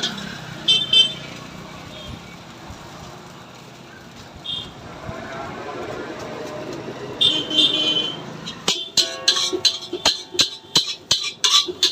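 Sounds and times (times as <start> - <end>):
road traffic noise: 0.0 - 11.9
horn toot: 7.1 - 10.7
sharp metallic clangs: 8.4 - 11.9.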